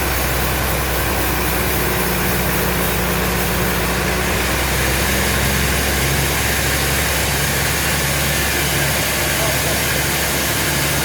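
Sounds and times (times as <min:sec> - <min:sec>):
sawmill machinery running: 0:00.0 - 0:11.0.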